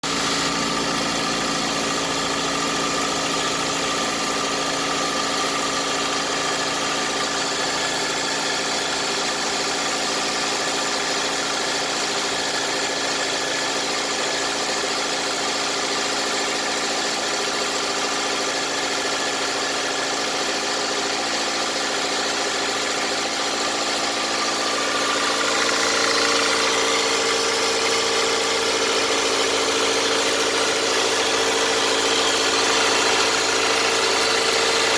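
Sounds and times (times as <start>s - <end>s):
petrol engine running: 0.0s - 10.6s, 22.3s - 34.9s
engine knocking: 0.0s - 34.9s.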